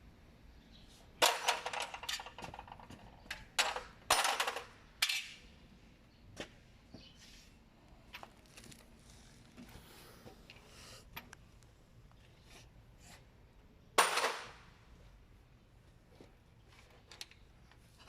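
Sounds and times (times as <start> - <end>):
metal parts and tools clattering: 1.2 - 5.4.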